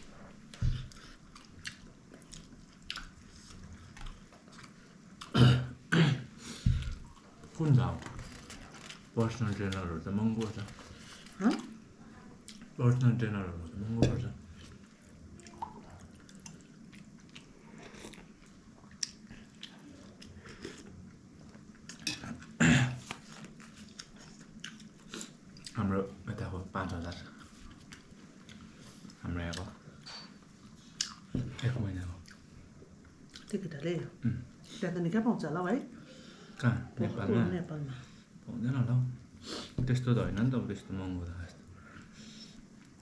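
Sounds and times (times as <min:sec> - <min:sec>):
person chewing: 0:00.5 - 0:05.4, 0:14.6 - 0:25.8, 0:27.0 - 0:31.3.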